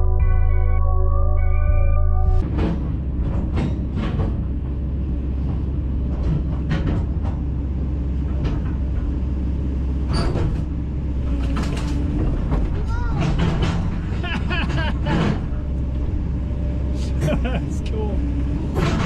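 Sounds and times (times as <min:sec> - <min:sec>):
excavator diesel engine rumbling: 0:02.2 - 0:19.0
metallic clanks and knocks: 0:02.4 - 0:09.4, 0:10.0 - 0:16.3, 0:18.7 - 0:19.0.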